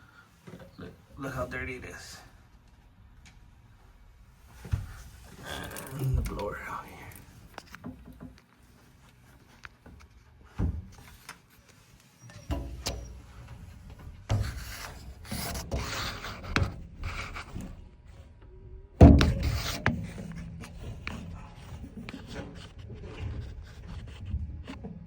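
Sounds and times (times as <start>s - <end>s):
rubbing and scraping handling noise: 10.9s - 18.2s, 19.0s - 25.0s
loud thump: 19.0s - 20.2s
knocks: 19.0s - 21.4s.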